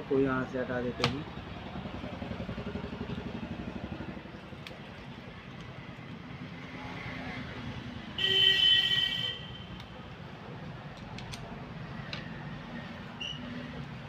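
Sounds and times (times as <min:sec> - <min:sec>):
road traffic: 0:00.0 - 0:14.0
vehicle engine running: 0:01.2 - 0:05.2
vehicle horn honking: 0:08.2 - 0:09.6.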